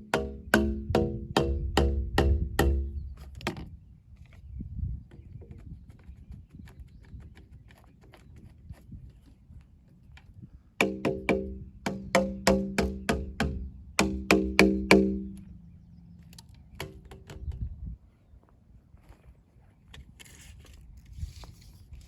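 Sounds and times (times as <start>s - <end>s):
sharp ringing knocks: 0.0s - 3.1s, 10.8s - 15.5s.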